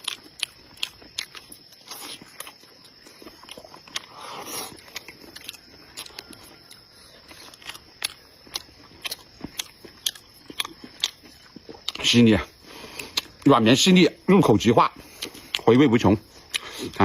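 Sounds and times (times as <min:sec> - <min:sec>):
close-miked chewing: 0:00.0 - 0:14.0, 0:14.9 - 0:17.0
wet lip smacks and mouth clicks: 0:13.0 - 0:13.4.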